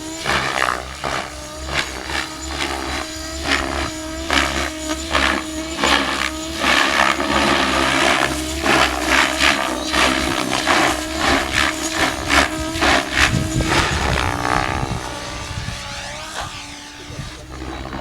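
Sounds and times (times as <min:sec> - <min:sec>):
helicopter motor and gear whine: 0:00.0 - 0:18.0
rotor blades whooshing: 0:00.0 - 0:18.0.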